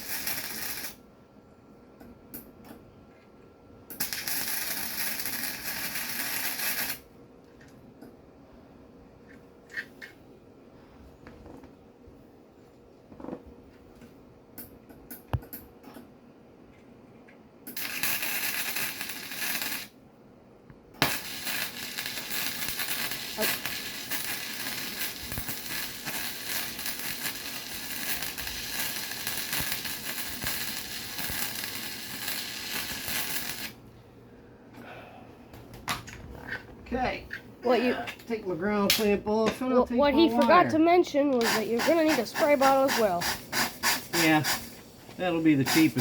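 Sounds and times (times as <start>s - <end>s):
welder arc crackling: 0.0s - 1.0s, 3.9s - 7.1s, 17.7s - 19.9s, 21.0s - 33.8s, 41.3s - 46.0s.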